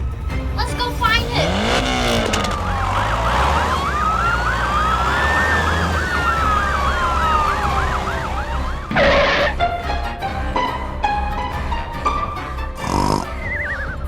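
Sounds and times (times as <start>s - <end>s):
siren yelp warbling: 0.9s - 9.5s
siren wail rising and falling: 1.2s - 9.6s.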